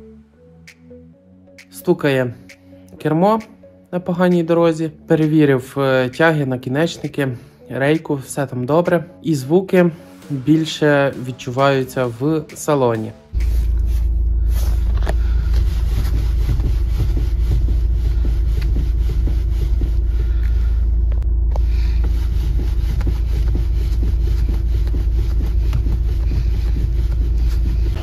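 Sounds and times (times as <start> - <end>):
road rumble inside car: 13.4 - 28.0
steering knocks and rattles: 14.9 - 20.6.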